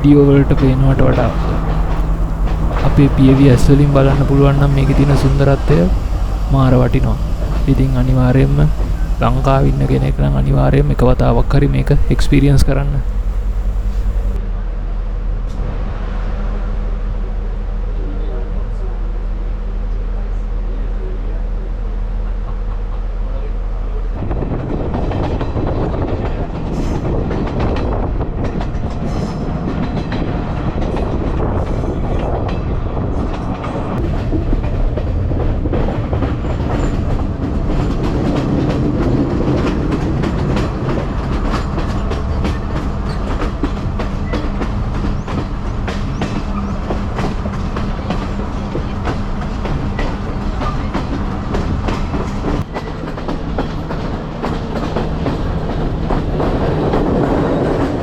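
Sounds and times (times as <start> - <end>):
wheels clattering over rail joints: 0.0 - 14.4
train carriage rumble: 0.0 - 58.0.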